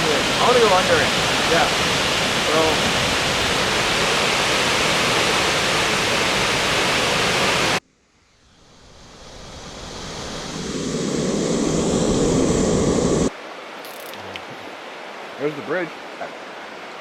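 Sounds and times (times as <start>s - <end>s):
dull rush of water: 0.0s - 7.8s, 8.8s - 17.0s
waterfall roaring: 0.0s - 7.8s.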